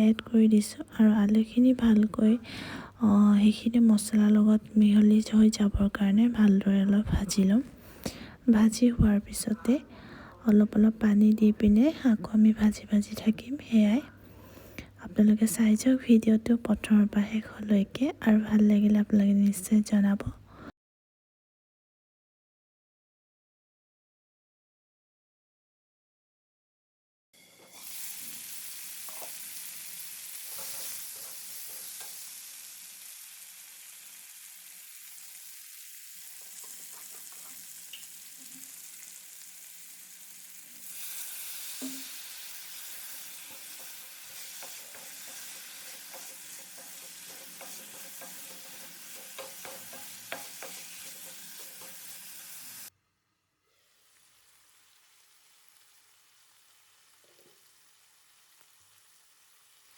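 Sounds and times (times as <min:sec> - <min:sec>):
faint hiss: 0:27.4 - 0:52.9, 0:53.7 - 0:59.9
potatoes sizzling in oil: 0:27.4 - 0:52.9, 0:53.8 - 0:59.9
stirring clicks: 0:43.5 - 0:52.1.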